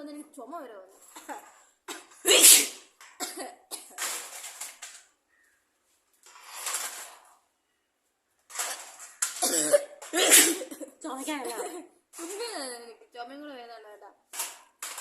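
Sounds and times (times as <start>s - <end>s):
person coughing: 2.3s - 4.0s, 9.4s - 11.0s.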